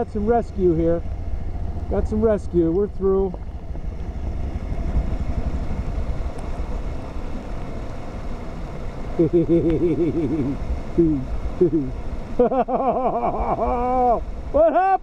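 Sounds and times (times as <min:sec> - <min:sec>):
motorcycle engine rumbling: 0:00.0 - 0:14.6
man calling out: 0:11.0 - 0:12.0, 0:13.9 - 0:15.0.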